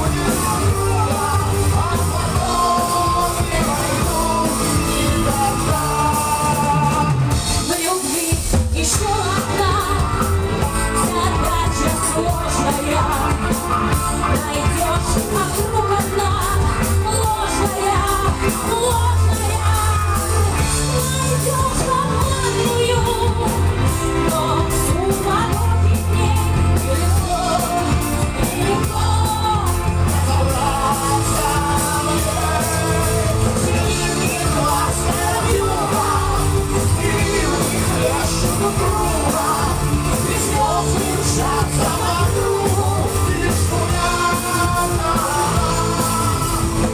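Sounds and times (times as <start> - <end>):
live rock band playing: 0.0 - 46.9
person singing: 0.0 - 46.9.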